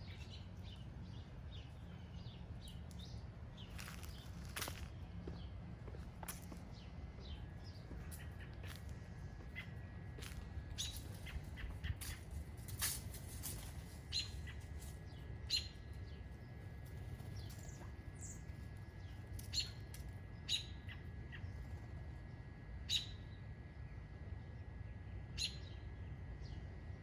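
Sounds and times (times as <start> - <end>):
small birds chirping: 0.0 - 27.0.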